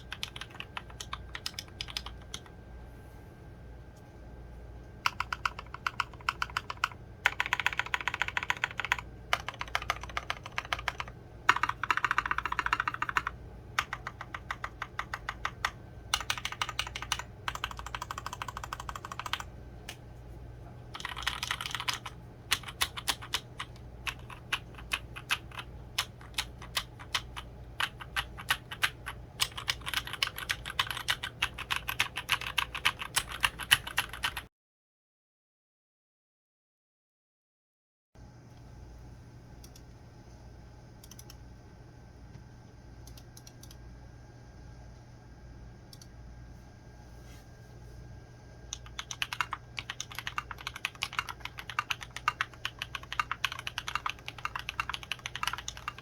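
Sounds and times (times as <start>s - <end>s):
mechanical keyboard typing: 0.0s - 2.5s, 5.0s - 19.5s, 20.9s - 34.5s, 48.7s - 56.0s.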